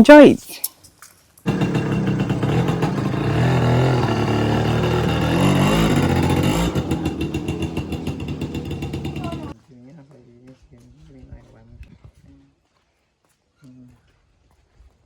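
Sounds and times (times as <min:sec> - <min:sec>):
small engine running: 0:01.5 - 0:09.6.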